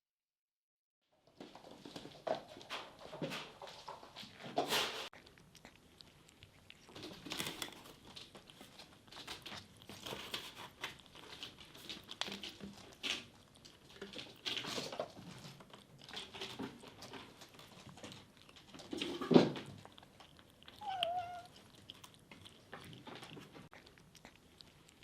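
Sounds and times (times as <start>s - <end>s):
kitten crunching dry kibble: 1.4s - 25.0s.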